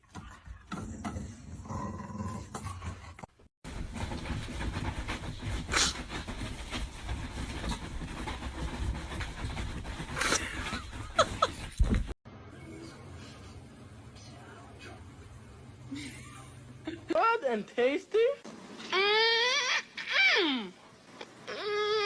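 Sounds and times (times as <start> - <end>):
dog panting: 4.0 - 11.7.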